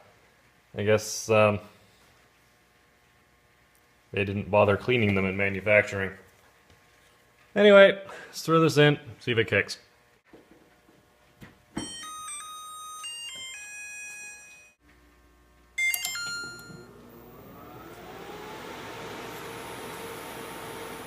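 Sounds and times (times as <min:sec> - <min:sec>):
microwave beeper tune: 0:11.8 - 0:14.8, 0:15.8 - 0:18.8
microwave hum: 0:14.8 - 0:21.0.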